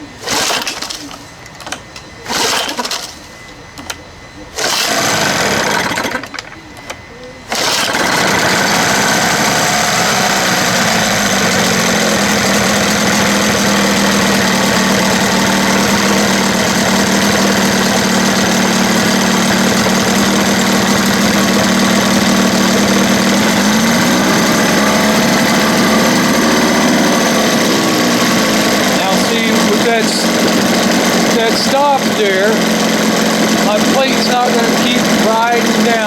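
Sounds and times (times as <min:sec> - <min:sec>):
outboard motor idling: 0:04.5 - 0:06.5, 0:07.5 - 0:36.0.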